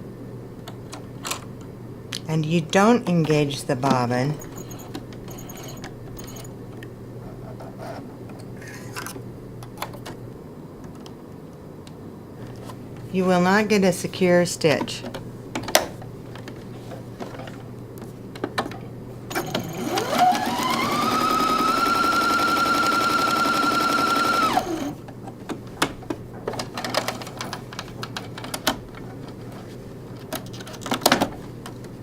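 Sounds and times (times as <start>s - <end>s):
sewing machine motor whine: 4.4s - 6.5s, 19.3s - 25.0s.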